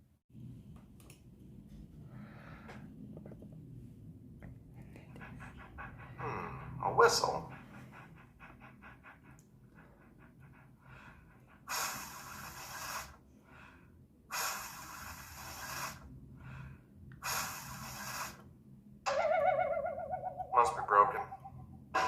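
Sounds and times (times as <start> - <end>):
heavy breathing: 2.0 - 3.0, 4.8 - 18.5.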